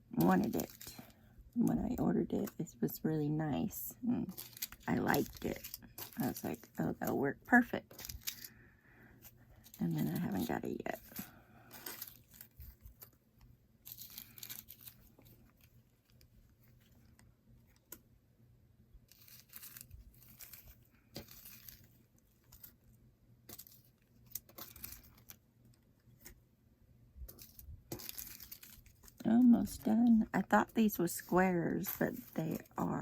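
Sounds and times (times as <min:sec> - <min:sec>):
plastic bags crinkling: 0:04.1 - 0:08.6, 0:13.9 - 0:16.2, 0:27.3 - 0:33.0.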